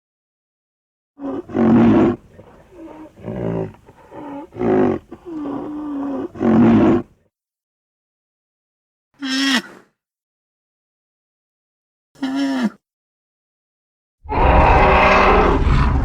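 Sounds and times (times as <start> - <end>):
creature grunting calls: 14.3 - 16.0
creature roaring and bellowing: 14.3 - 16.0.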